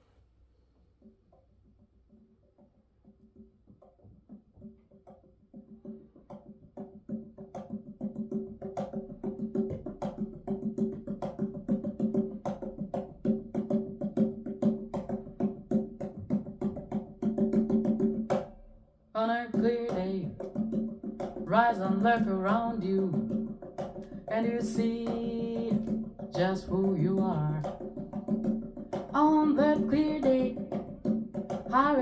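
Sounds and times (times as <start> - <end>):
person singing: 19.2 - 20.4, 21.5 - 23.4, 24.3 - 27.8, 29.1 - 30.7, 31.7 - 32.0.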